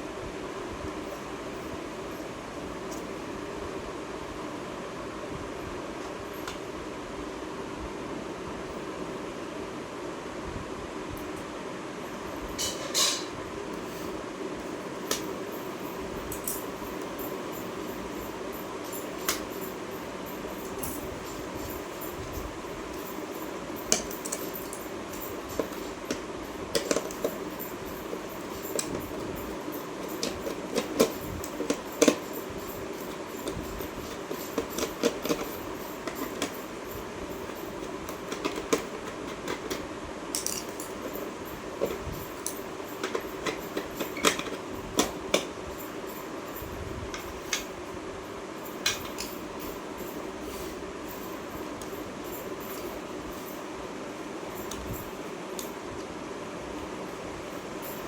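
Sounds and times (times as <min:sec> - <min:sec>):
steady low hum: 0:00.0 - 0:58.0
small parts and tools clicking: 0:20.7 - 0:45.5, 0:48.8 - 0:49.5.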